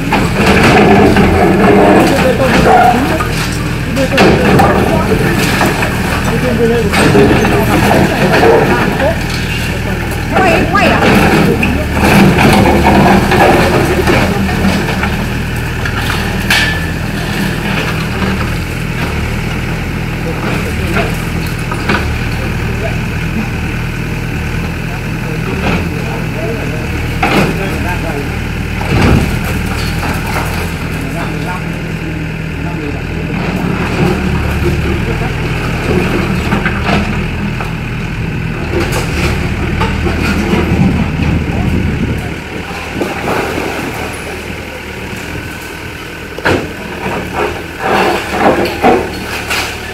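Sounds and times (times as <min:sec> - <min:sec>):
excavator diesel engine running: 0:00.0 - 0:49.9.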